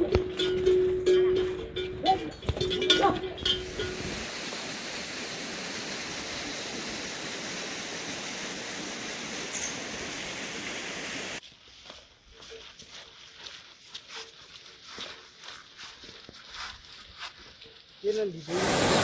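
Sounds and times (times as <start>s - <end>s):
waterfall rushing: 3.6s - 11.4s, 18.5s - 19.0s.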